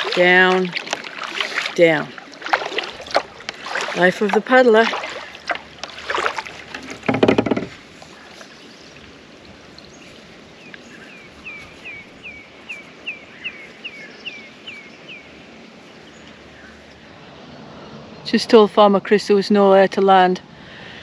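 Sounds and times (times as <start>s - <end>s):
kayak paddle splashing water: 0.0s - 11.9s.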